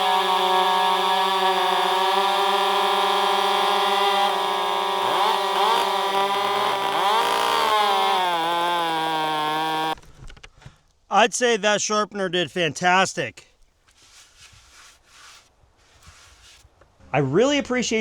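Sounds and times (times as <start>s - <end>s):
chainsaw running at high revs: 0.0s - 10.0s.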